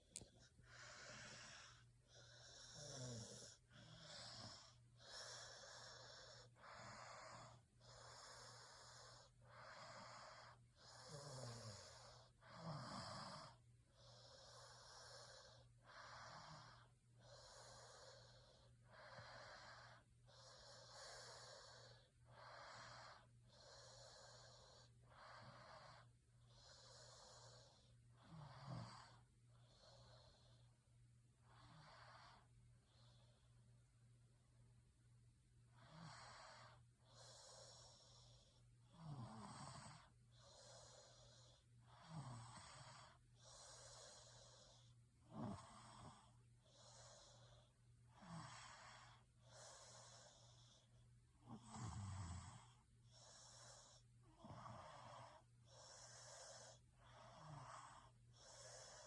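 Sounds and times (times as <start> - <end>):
person snoring: 0.0 - 30.6, 35.7 - 59.0.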